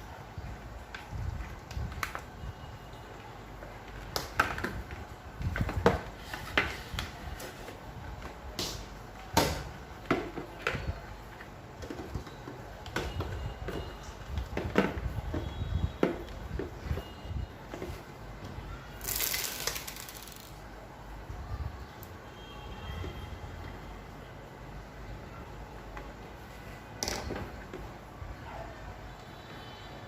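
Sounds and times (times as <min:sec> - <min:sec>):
plastic parts clicking and knocking: 0:03.9 - 0:11.0, 0:11.7 - 0:20.6, 0:27.0 - 0:27.9.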